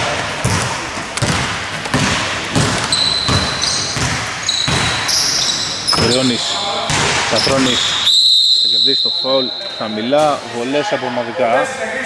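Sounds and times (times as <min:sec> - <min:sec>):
basketball dribbling: 0:00.0 - 0:08.0
sneaker squeaks: 0:00.0 - 0:10.4.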